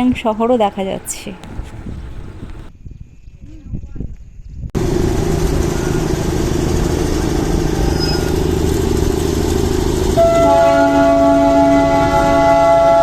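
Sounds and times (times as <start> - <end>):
low engine-like rumbling: 4.8 - 13.0
long horn-like note: 10.2 - 13.0.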